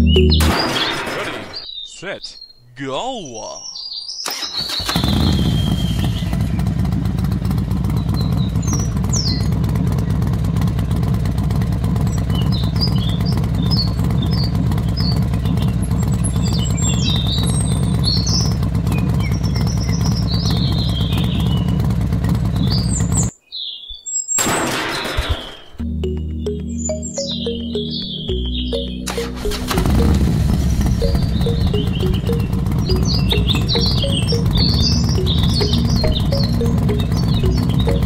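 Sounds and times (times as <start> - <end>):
birds chirping: 0.0 - 6.9, 12.2 - 21.8, 25.6 - 38.0
motorcycle engine running: 4.7 - 23.3, 27.4 - 38.0.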